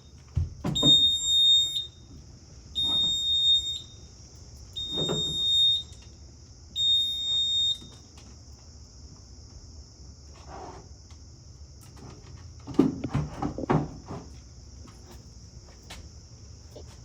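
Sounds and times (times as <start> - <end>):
fire alarm high piercing tone: 0.0 - 8.1.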